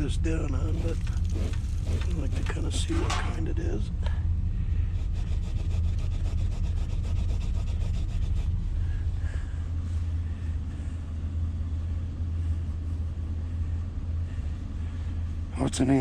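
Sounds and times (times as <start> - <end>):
low engine hum: 0.0 - 16.0
quick rubbing of a chip: 0.7 - 3.0, 4.9 - 9.1.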